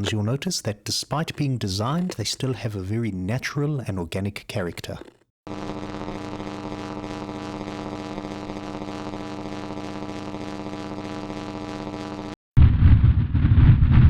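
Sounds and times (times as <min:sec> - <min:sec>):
electric buzzing hum: 0:04.4 - 0:12.4.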